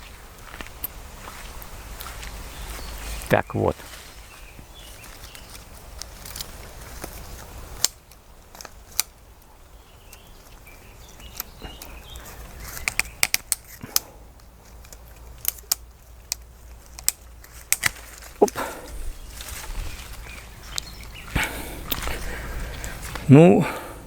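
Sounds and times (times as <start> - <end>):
pruner clicks and knocks: 5.0 - 9.3, 11.1 - 19.0.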